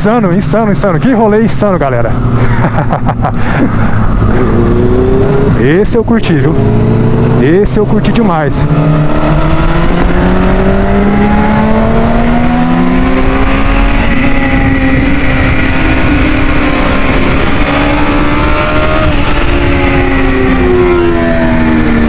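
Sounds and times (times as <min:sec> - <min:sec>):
motorcycle engine at high revs: 0:02.1 - 0:22.0.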